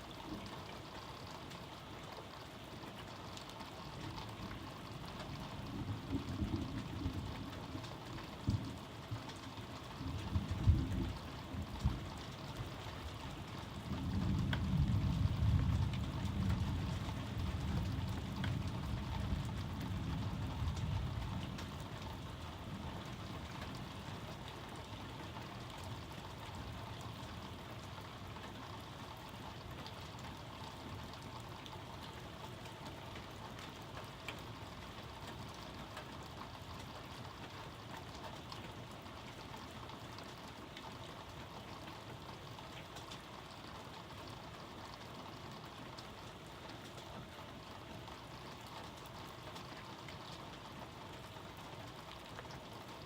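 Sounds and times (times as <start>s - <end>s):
steady rain: 0.0s - 53.0s
thunder rumbling: 13.8s - 21.8s.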